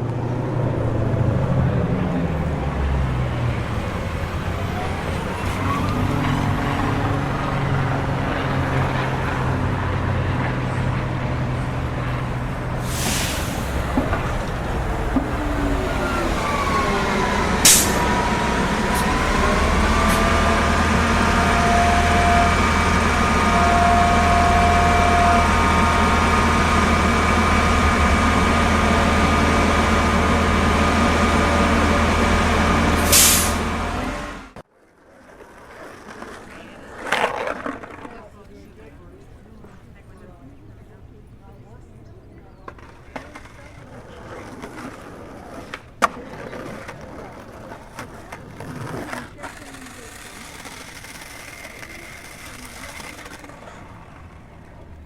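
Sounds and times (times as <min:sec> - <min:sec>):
heavy vehicle engine running: 0:00.0 - 0:34.6
air brake hisses: 0:12.8 - 0:14.0, 0:17.6 - 0:19.1, 0:33.0 - 0:33.7.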